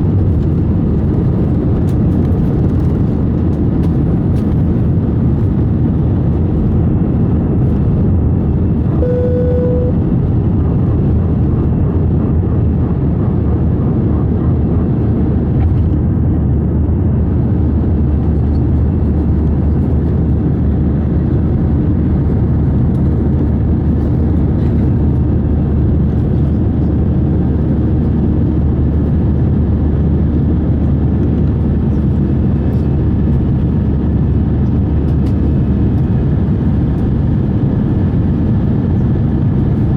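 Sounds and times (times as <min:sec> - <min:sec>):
jet engine and airflow noise: 0:00.0 - 0:39.9
short single tone: 0:08.9 - 0:10.1.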